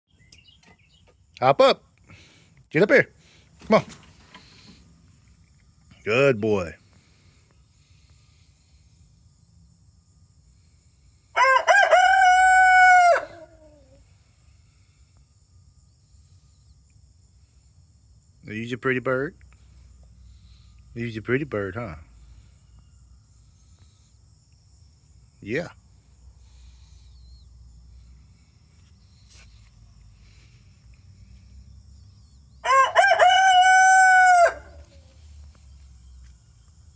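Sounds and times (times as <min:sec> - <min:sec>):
rooster crowing: 0:11.4 - 0:14.0, 0:32.6 - 0:35.2.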